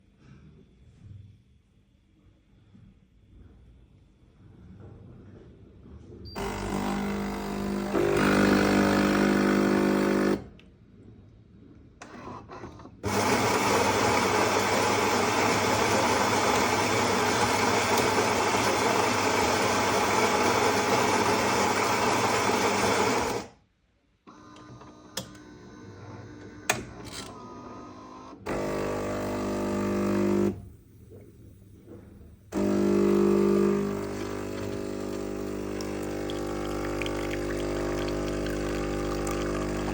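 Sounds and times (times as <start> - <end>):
espresso machine pump humming: 6.4 - 10.4, 13.0 - 23.5, 28.5 - 30.6, 32.6 - 39.9.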